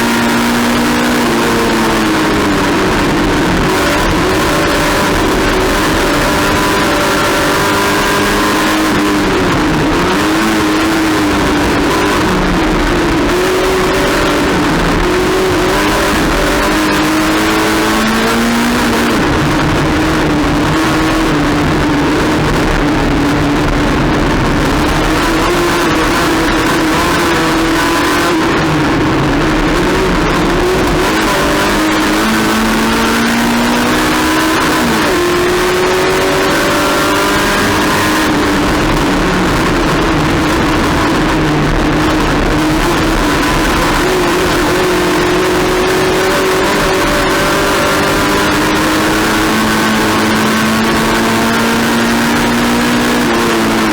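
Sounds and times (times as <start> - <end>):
race car engine running hard: 0.0 - 53.9
wind and road noise: 0.0 - 53.9.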